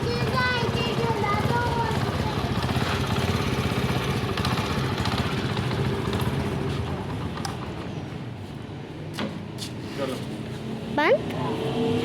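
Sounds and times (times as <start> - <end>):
motorcycle engine idling: 0.0 - 7.9.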